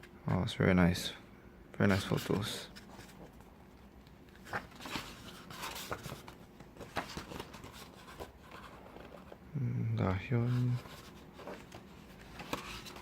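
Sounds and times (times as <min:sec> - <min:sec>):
pages rustling and tapping: 0:01.9 - 0:09.4, 0:10.5 - 0:13.0.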